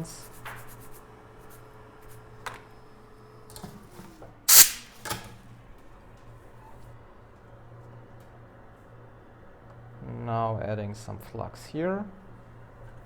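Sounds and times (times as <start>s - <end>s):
sharp knock: 4.5s - 4.9s.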